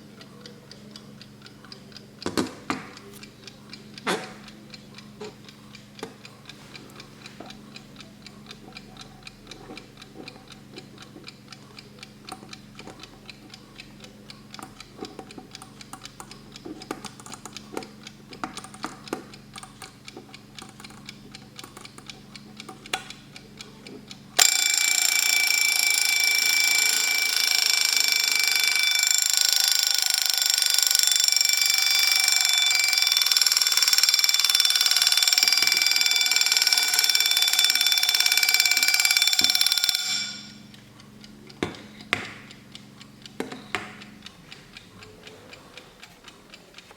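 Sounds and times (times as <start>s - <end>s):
alarm clock ticking: 0.0s - 46.9s
alarm clock ringing: 24.4s - 40.9s.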